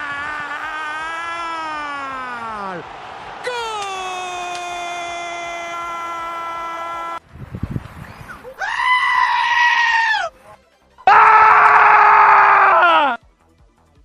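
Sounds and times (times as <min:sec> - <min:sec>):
long held screams: 0:00.0 - 0:07.2, 0:08.6 - 0:10.3, 0:11.1 - 0:13.2.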